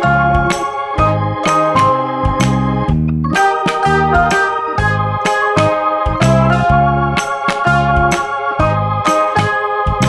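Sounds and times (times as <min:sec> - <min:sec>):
bass line: 0:00.0 - 0:10.0
organ-like keyboard tone: 0:00.0 - 0:10.0
quick evenly struck notes: 0:00.0 - 0:10.0.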